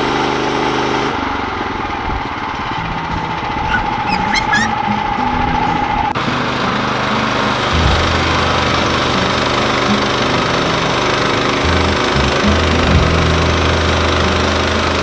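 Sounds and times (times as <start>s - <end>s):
steady high tone with chirping: 3.5s - 6.2s
bandsaw mill running: 6.2s - 15.0s.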